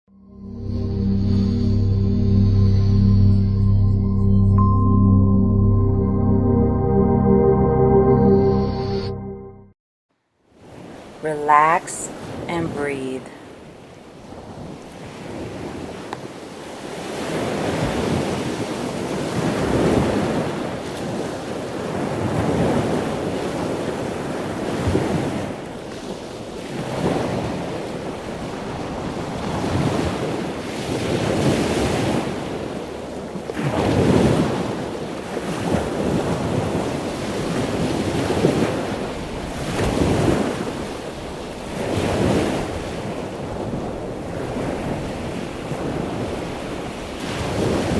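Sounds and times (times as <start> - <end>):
ocean waves breaking on shore: 10.5 - 47.9
wind noise on microphone: 33.6 - 47.9.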